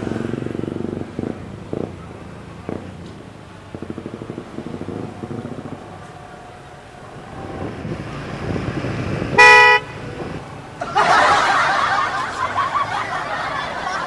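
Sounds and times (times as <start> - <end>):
car horn blast: 9.3 - 10.3.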